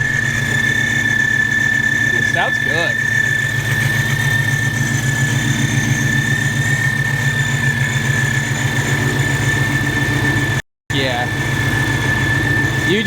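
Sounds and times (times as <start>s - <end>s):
car engine idling: 0.0s - 13.0s
steady high-pitched whine: 0.0s - 13.0s.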